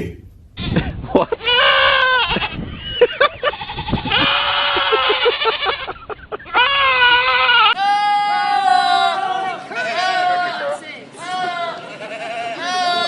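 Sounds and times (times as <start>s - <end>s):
goat bleating: 1.4s - 2.7s, 3.4s - 7.8s, 11.4s - 13.0s.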